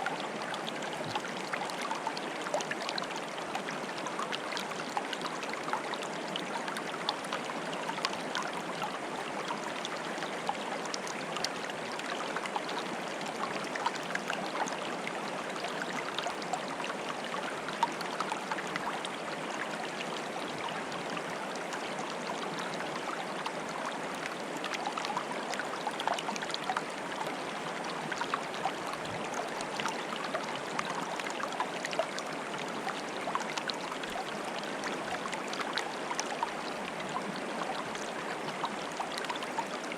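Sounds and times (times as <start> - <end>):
water bubbling and trickling: 0.0 - 39.9.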